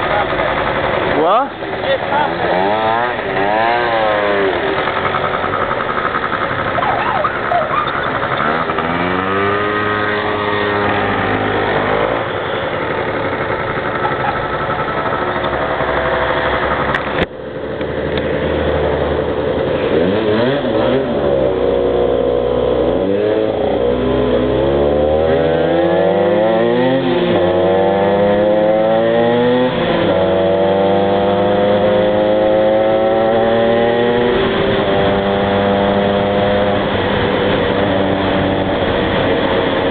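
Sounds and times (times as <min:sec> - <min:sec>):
scooter engine accelerating: 0:00.0 - 0:39.9
two-stroke motorcycle engine accelerating: 0:00.0 - 0:39.9.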